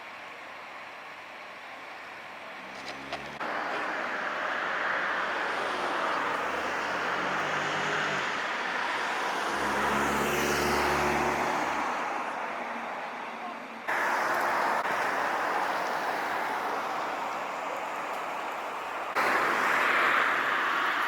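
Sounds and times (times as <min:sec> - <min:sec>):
vehicles passing on road: 0:00.0 - 0:21.0.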